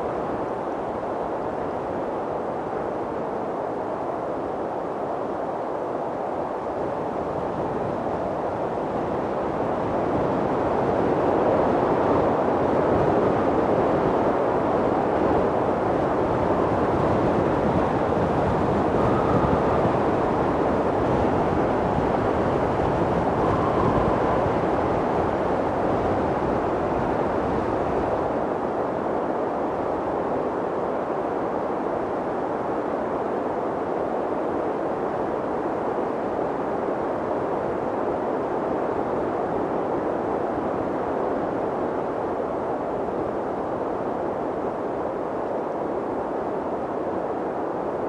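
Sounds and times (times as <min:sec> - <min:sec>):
faint wind whistles: 0:00.0 - 0:48.0
strong wind blowing: 0:00.0 - 0:48.0.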